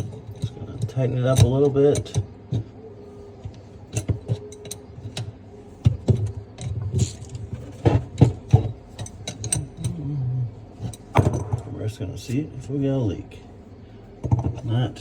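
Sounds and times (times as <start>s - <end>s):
wrench clinking on metal fitting: 8.5s - 10.0s.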